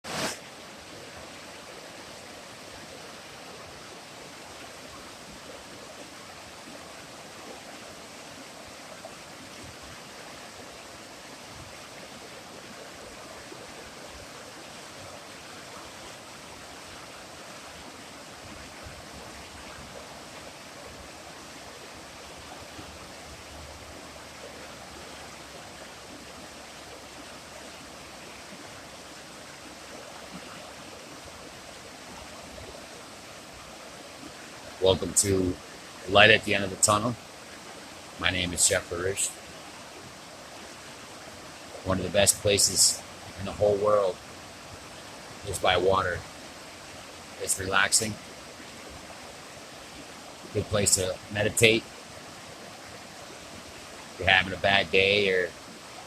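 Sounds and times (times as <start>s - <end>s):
water rushing: 0.0s - 56.0s.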